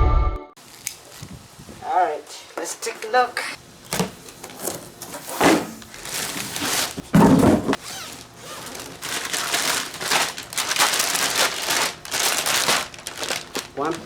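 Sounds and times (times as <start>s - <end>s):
rustling packaging: 3.9s - 14.0s.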